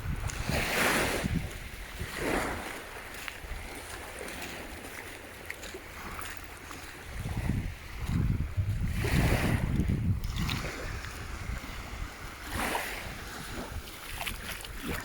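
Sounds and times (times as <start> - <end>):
sea water sloshing and lapping: 0.0 - 15.0
water swish: 0.0 - 15.0
wind rumble on microphone: 0.0 - 15.0
small faint splashes: 12.4 - 15.0.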